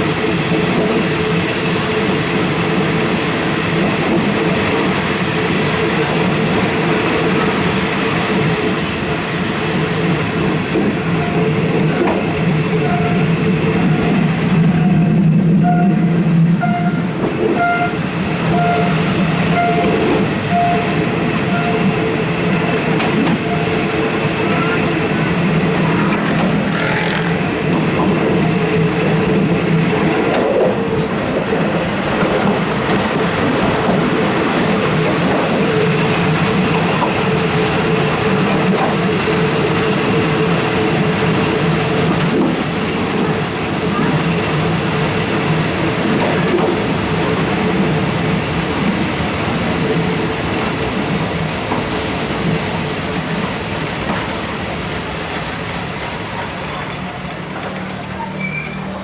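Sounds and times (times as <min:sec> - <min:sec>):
wheel and rail rumble: 0:00.0 - 0:59.0
locomotive engine droning: 0:11.3 - 0:30.0
faint high whine: 0:25.4 - 0:28.6.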